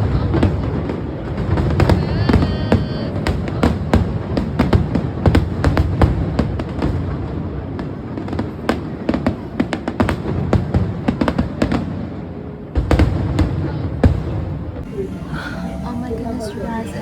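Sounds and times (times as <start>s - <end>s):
fireworks popping and crackling: 0.0s - 12.1s
rumble of fireworks bangs: 0.0s - 14.9s
music: 14.8s - 17.0s.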